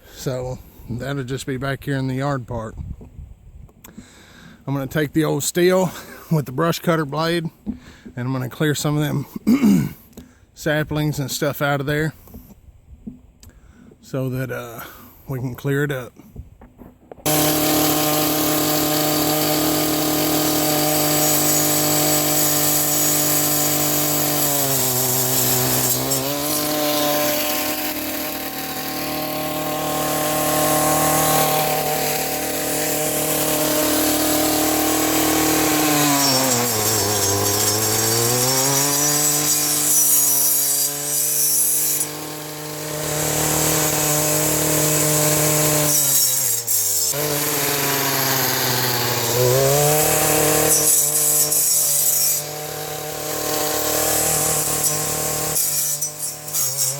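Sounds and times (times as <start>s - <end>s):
brush cutter cutting brush: 17.2s - 56.9s.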